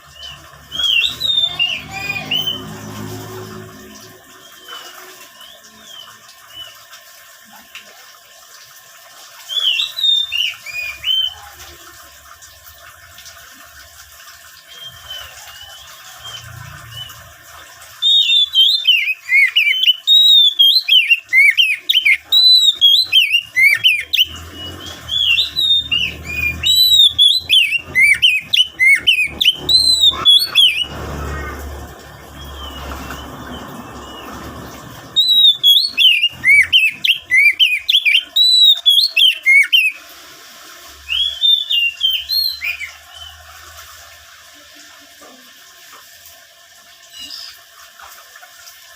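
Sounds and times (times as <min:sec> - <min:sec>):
bird whistling song: 0:00.1 - 0:02.6, 0:09.4 - 0:11.4, 0:14.7 - 0:17.2, 0:18.0 - 0:30.9, 0:32.4 - 0:40.0, 0:41.1 - 0:43.4.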